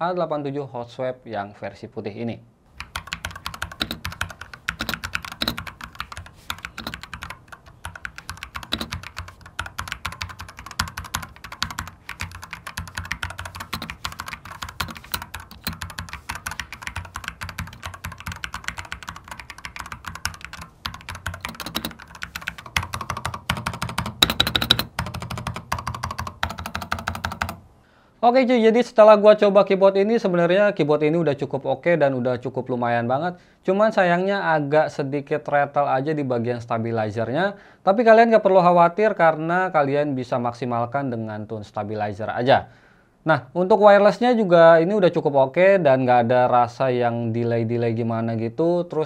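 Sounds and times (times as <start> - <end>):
fast typing on mechanical keyboard: 2.8 - 27.6.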